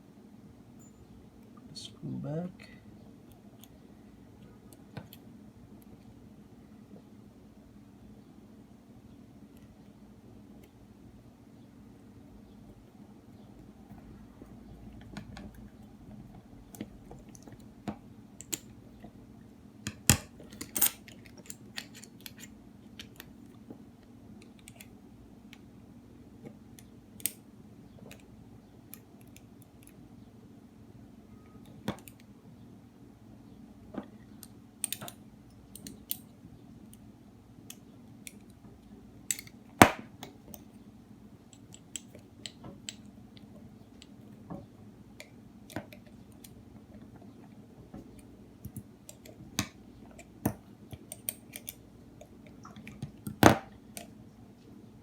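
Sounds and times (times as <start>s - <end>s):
small metal clicks and taps: 34.0s - 35.2s.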